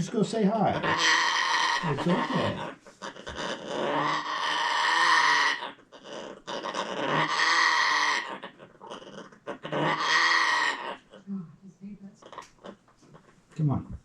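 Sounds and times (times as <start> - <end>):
parrot growling calls: 0.0 - 11.3.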